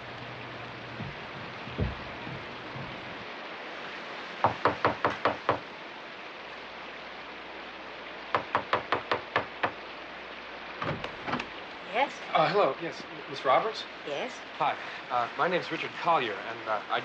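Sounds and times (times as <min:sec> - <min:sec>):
steady rain: 0:00.0 - 0:17.0
knuckles knocking on door: 0:01.0 - 0:03.2, 0:04.4 - 0:05.6, 0:08.3 - 0:09.8.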